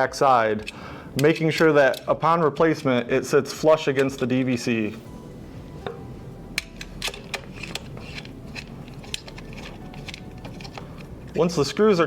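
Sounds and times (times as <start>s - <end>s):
small metal parts clicking: 0.6s - 2.9s, 6.6s - 11.4s.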